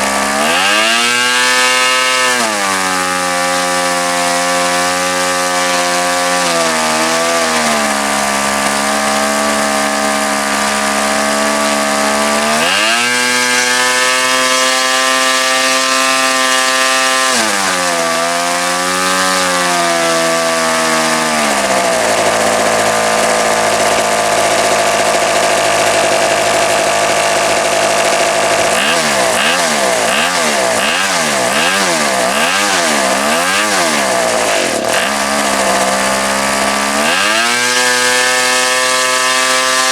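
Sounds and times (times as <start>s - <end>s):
model engine running: 0.0s - 39.9s.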